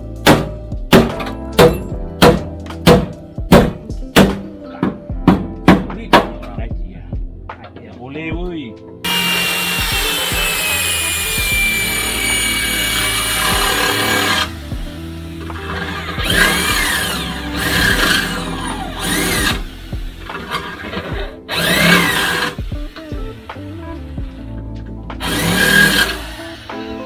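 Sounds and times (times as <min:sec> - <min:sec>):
electric drill boring into sheet metal: 0:09.1 - 0:24.0, 0:25.2 - 0:27.0.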